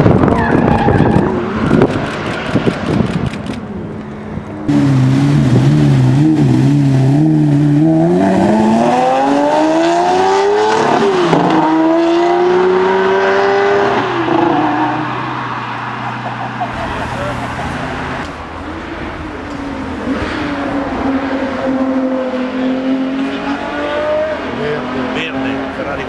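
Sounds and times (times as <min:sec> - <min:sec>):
car engine accelerating hard: 0:04.6 - 0:15.0.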